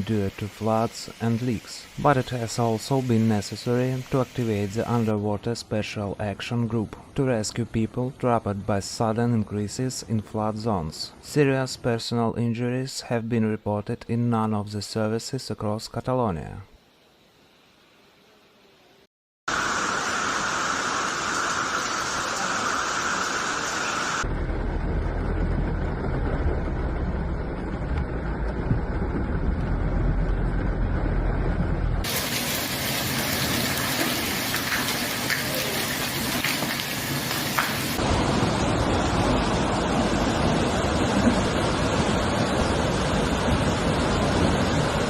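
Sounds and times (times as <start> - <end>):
heavy downpour: 0.0 - 6.4, 19.5 - 30.7, 32.0 - 45.0
rushing floodwater: 19.5 - 24.2, 32.0 - 45.0
strong low rumble: 24.2 - 32.1, 38.0 - 45.0.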